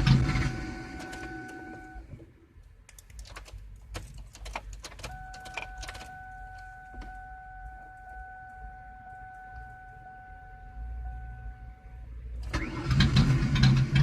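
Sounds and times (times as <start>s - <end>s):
car electronic warning tone: 0.0s - 2.1s, 5.1s - 12.8s
clicks and rattles: 2.9s - 6.1s.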